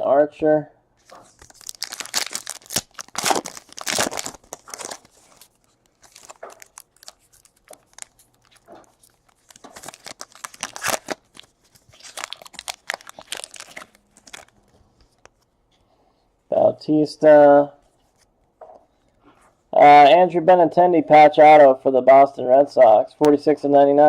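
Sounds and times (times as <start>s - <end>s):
card pack wrappers crinkling: 1.0s - 15.5s
cards being handled: 1.0s - 15.8s.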